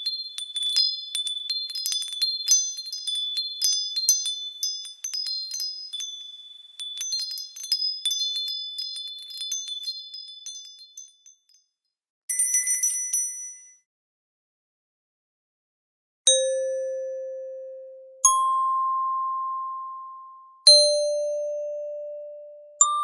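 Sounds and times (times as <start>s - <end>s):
small bells chiming: 0.0s - 13.9s.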